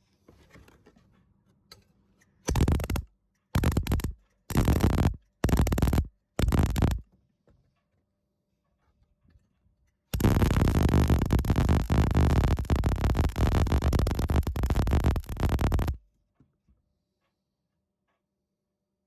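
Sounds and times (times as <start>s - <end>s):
welder crackling buzz: 2.5s - 3.0s, 3.6s - 7.0s, 10.2s - 16.0s.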